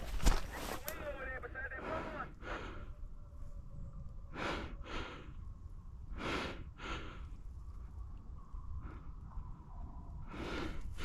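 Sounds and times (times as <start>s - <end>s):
steady low rumble: 0.0s - 11.0s
person breathing heavily: 1.8s - 3.2s, 4.2s - 7.8s, 8.7s - 11.0s.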